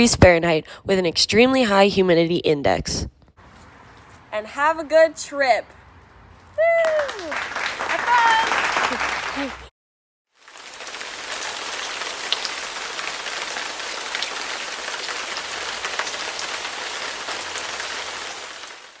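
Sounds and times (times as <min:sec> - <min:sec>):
rain drop ticks: 0:10.4 - 0:18.8
steady rain falling: 0:10.4 - 0:19.0.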